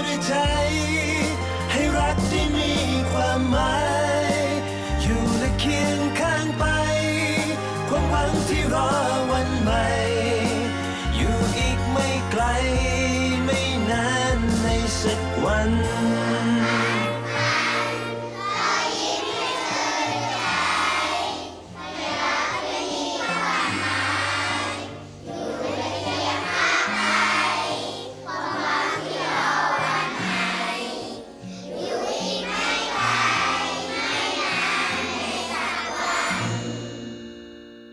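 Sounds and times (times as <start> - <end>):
upbeat pop song with group singing: 0.0 - 18.7.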